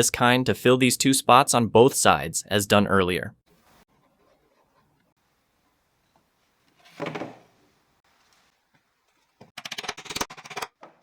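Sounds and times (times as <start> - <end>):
rattling clicks of wooden pieces: 9.4 - 11.0.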